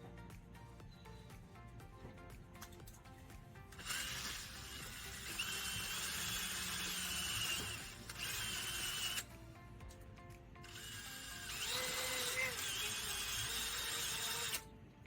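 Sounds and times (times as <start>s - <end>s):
high fan motor whine: 3.6s - 15.0s
heat gun blowing: 3.7s - 9.3s, 10.7s - 14.6s.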